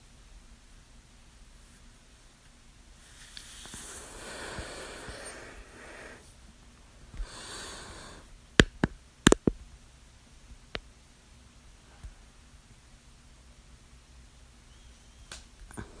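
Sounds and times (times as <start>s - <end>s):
person breathing: 3.6s - 8.3s, 15.7s - 16.0s.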